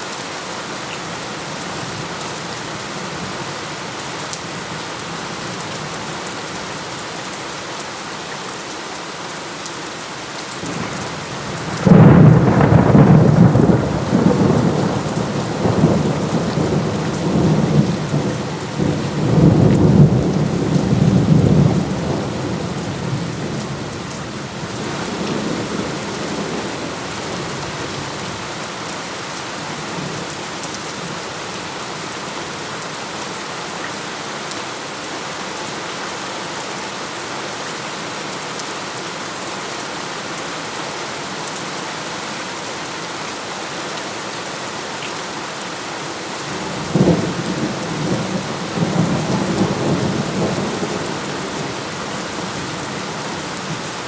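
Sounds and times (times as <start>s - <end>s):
heavy rain: 0.0s - 54.0s
thunder rolling: 10.7s - 22.7s.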